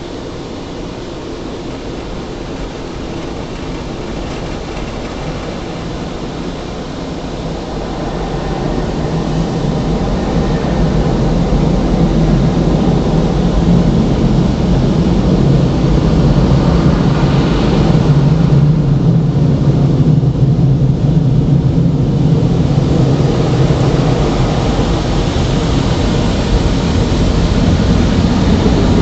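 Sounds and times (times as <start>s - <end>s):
low hum: 0.0s - 17.8s
car wash machinery roaring: 0.0s - 29.0s.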